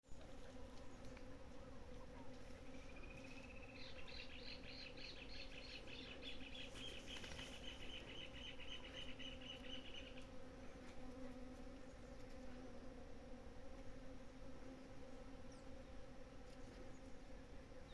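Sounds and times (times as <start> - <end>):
bees buzzing: 0.1 - 17.9.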